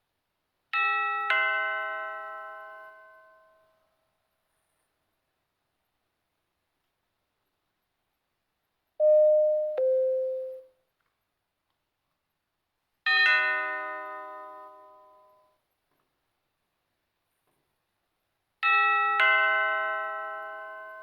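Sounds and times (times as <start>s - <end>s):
doorbell ding-dong: 9.0s - 10.7s
single ringing chime: 9.0s - 10.7s.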